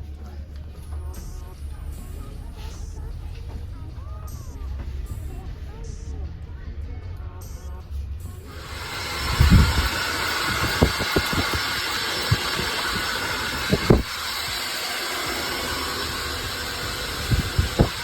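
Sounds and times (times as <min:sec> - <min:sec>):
hair steamer hissing: 0:08.4 - 0:18.0.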